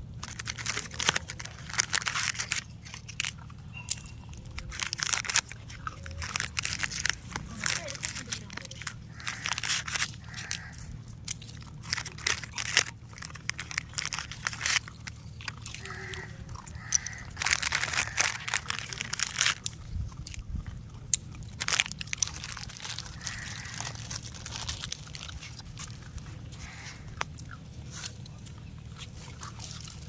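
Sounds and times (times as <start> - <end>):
dogs crunching food: 0.0 - 30.0.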